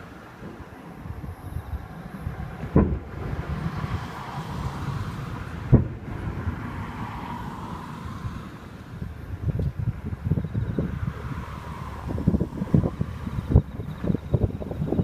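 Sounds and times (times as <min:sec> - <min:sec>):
steady low rumble: 0:00.0 - 0:15.0
fireworks bursting with deep booms: 0:05.5 - 0:06.5.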